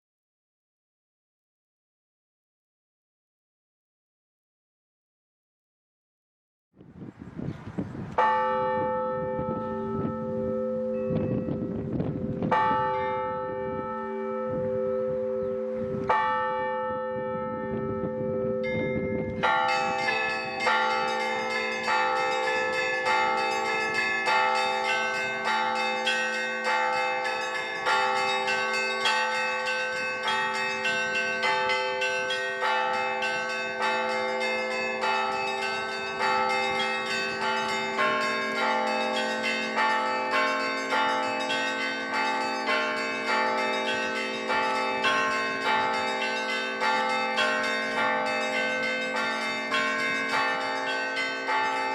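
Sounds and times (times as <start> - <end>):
large bell struck slowly: 8.2 - 51.9
smaller bells pealing fast: 8.2 - 51.9.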